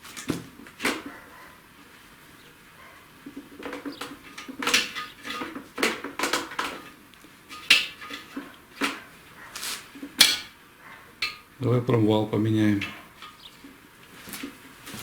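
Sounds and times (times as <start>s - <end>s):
metal engine parts clinking: 3.3s - 9.2s, 9.8s - 10.6s, 11.2s - 11.6s, 12.4s - 13.8s.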